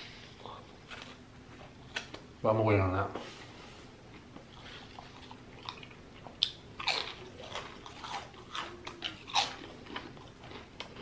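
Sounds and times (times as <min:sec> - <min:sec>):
chewing crunchy food: 0:04.1 - 0:11.0.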